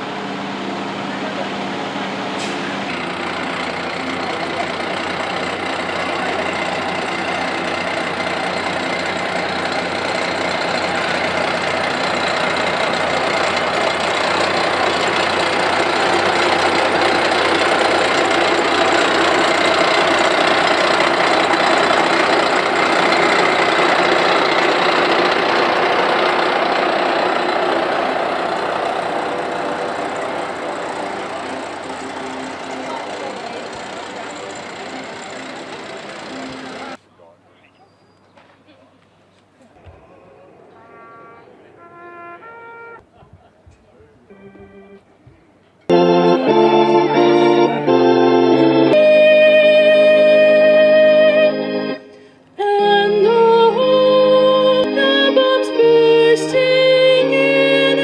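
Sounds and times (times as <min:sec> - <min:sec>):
large vehicle engine knocking: 0:02.5 - 0:37.0.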